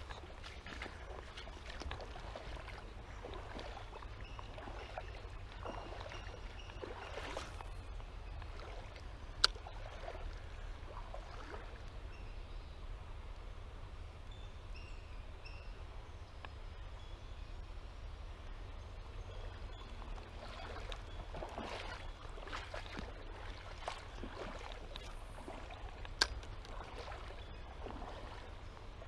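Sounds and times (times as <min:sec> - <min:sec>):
water splashing: 0:00.0 - 0:07.8, 0:08.5 - 0:11.8, 0:20.2 - 0:29.0
footsteps wading through water: 0:00.0 - 0:12.0, 0:19.5 - 0:29.0.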